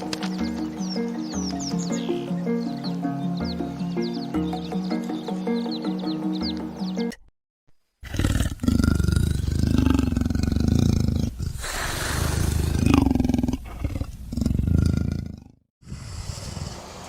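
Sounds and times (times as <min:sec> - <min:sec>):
big cat roaring and growling: 0:08.0 - 0:16.9.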